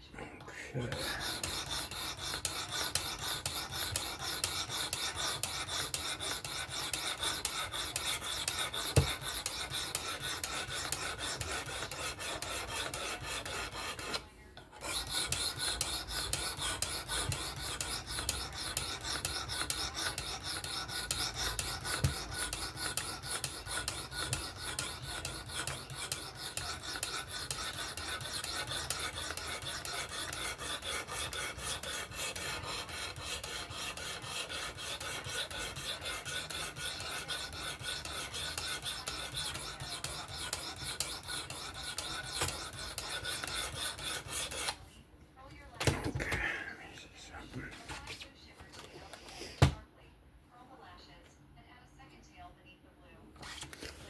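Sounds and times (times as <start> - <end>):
knife scraping on sharpening stone: 1.0 - 14.2, 14.8 - 44.8.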